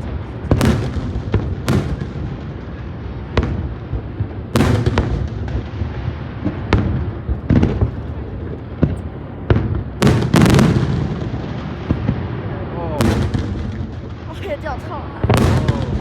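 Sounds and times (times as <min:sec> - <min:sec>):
fireworks bangs: 0:00.0 - 0:16.0
fireworks rumble and crackle: 0:00.0 - 0:16.0.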